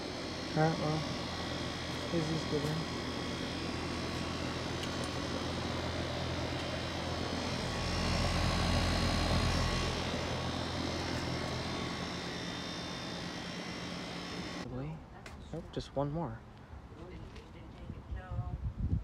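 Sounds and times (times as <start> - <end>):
air conditioner fan rush: 0.0 - 14.7
low compressor hum: 0.0 - 14.7.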